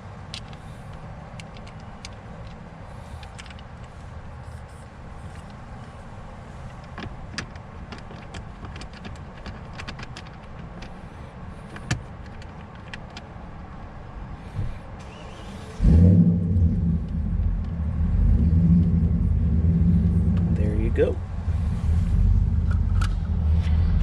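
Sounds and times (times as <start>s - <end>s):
car engine running: 14.6s - 24.0s.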